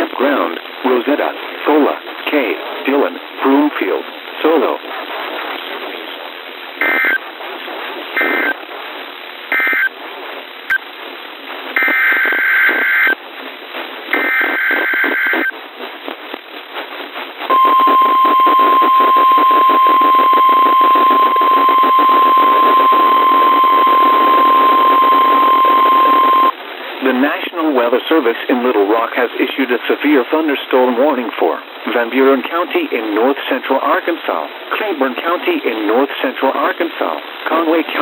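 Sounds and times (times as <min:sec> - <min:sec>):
hiss and static: 0:00.0 - 0:38.0
weather radio alarm tone: 0:17.5 - 0:26.5.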